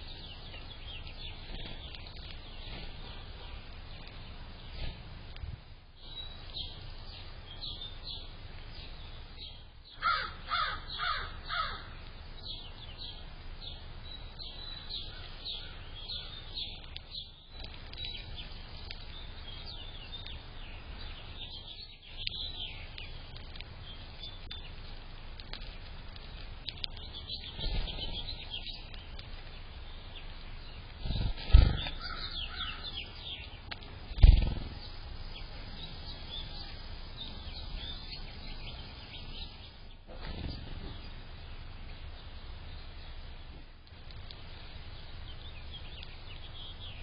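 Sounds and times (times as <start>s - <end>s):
small birds chirping: 0.0s - 47.0s
harsh bird calls: 6.0s - 25.0s, 25.6s - 43.3s.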